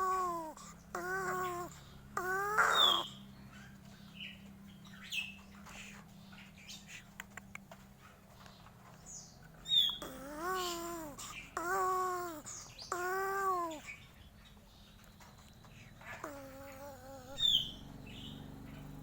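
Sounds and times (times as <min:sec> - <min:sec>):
crow calling: 0:00.9 - 0:03.7
faint clicks: 0:07.0 - 0:07.9.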